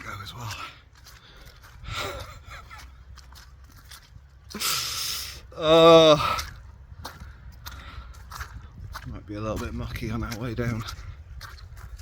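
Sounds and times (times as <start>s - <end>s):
man groaning: 5.5s - 6.3s.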